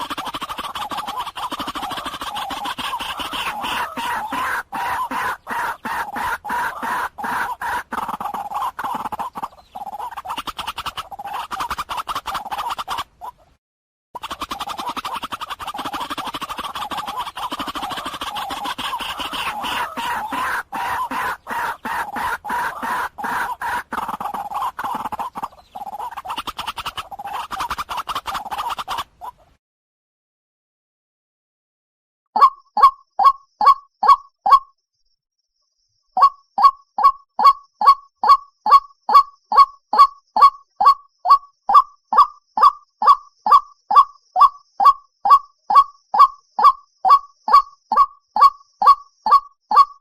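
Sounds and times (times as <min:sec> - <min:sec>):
waterhen harsh calls: 0:00.0 - 0:13.4, 0:14.2 - 0:29.6.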